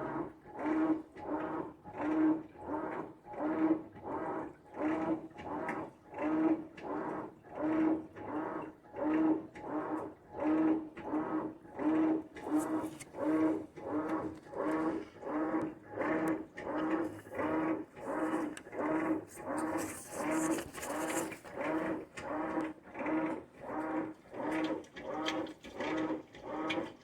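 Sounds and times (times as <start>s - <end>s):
washing machine wash strokes: 11.1s - 27.0s.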